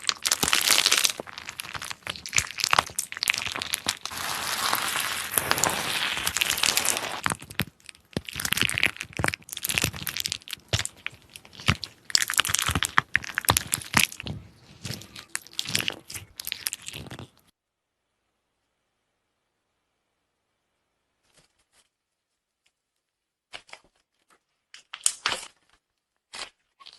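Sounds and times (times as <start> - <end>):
slime crackling when squeezed: 0.0 - 17.5.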